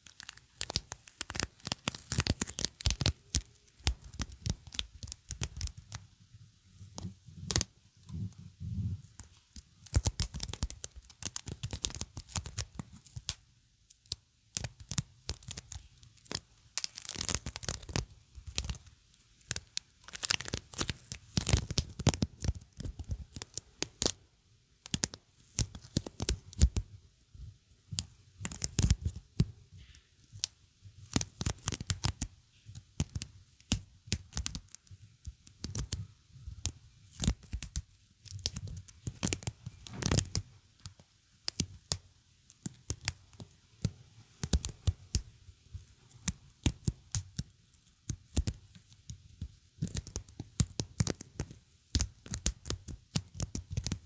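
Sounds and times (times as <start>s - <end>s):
sticky material tearing and peeling: 0.0s - 5.8s.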